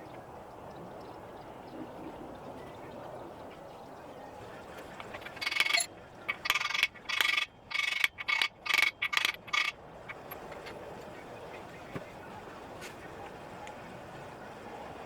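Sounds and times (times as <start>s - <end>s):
hammer striking metal socket: 5.0s - 10.6s.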